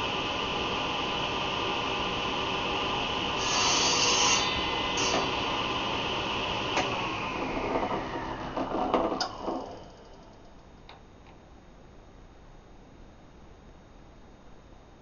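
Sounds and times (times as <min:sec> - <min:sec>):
power tool cutting wood: 0:03.4 - 0:09.8.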